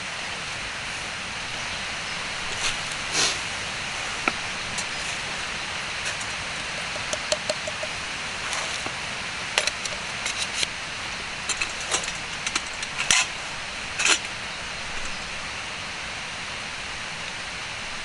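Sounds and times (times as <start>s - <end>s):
campfire crackling and popping: 2.2s - 14.3s.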